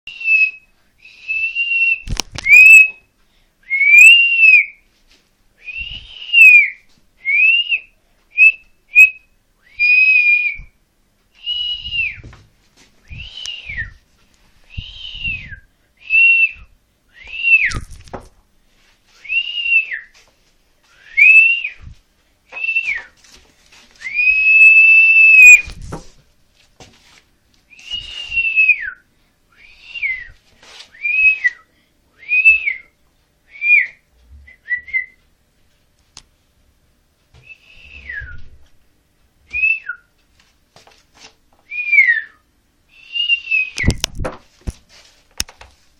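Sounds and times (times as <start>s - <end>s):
person whistling short notes: 0.1s - 3.0s, 3.7s - 4.8s, 5.6s - 10.7s, 11.4s - 12.2s, 13.1s - 14.0s, 14.7s - 17.9s, 19.2s - 20.1s, 20.9s - 21.9s, 22.5s - 23.2s, 24.0s - 25.7s, 27.7s - 35.2s, 37.4s - 38.5s, 39.5s - 40.1s, 43.0s - 44.0s.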